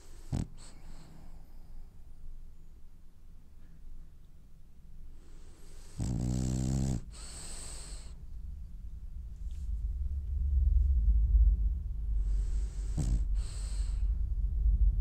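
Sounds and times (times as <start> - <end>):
dog snoring: 0.0 - 1.7, 5.2 - 8.2, 12.2 - 14.1
low rumble: 7.0 - 15.0.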